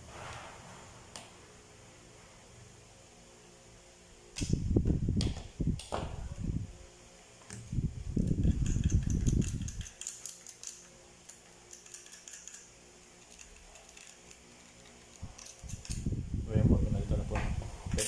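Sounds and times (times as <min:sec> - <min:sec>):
metallic clicks of tools: 0:08.2 - 0:16.1
low rumble of handling noise: 0:13.2 - 0:18.0.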